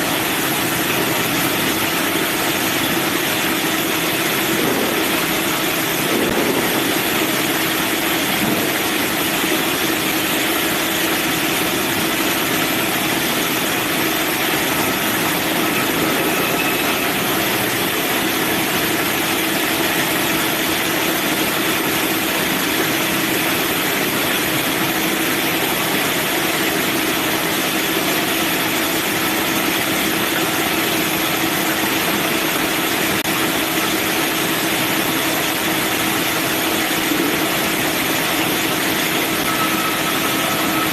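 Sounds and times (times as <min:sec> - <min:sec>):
bandsaw running: 0:00.7 - 0:21.6.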